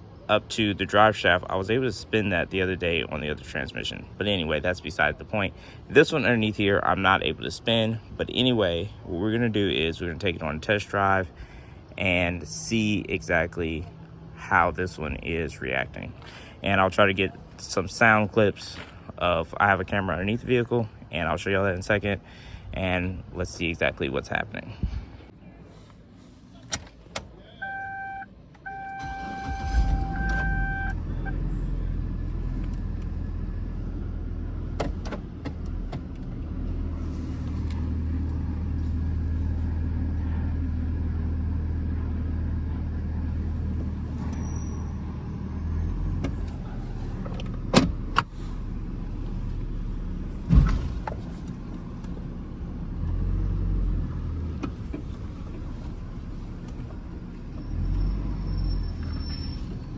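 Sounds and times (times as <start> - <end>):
car engine starting and running: 26.6 - 59.9.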